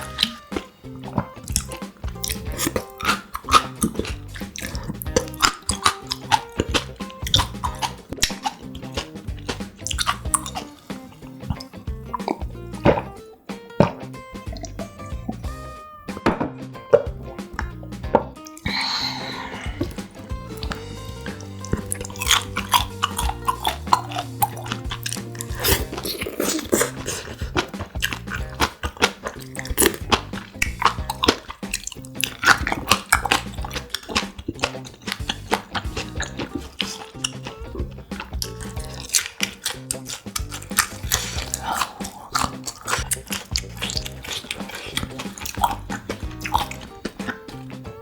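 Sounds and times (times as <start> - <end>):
wet chewing and biting: 0.0 - 16.2, 16.8 - 48.0
background music with held notes: 0.0 - 48.0.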